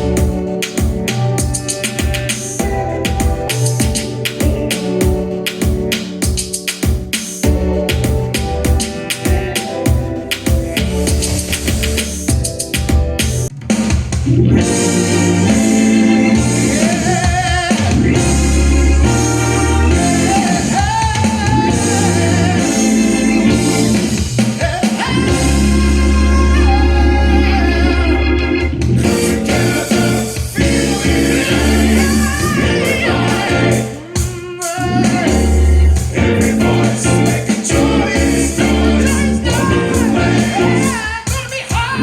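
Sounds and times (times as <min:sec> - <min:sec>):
organ-like chords: 0:00.0 - 0:41.4
person singing: 0:15.3 - 0:24.0, 0:24.6 - 0:42.0
deep sustained bass line: 0:35.0 - 0:41.0.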